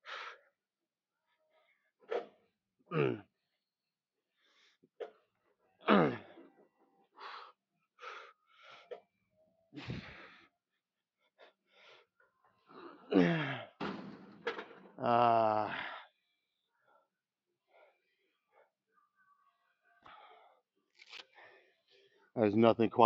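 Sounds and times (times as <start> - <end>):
man groaning: 2.9 - 3.2, 5.9 - 6.3, 13.1 - 13.7, 15.0 - 15.9
man wheezing breaths and gasps: 2.9 - 3.4, 9.7 - 10.6, 11.2 - 13.8, 15.0 - 16.3.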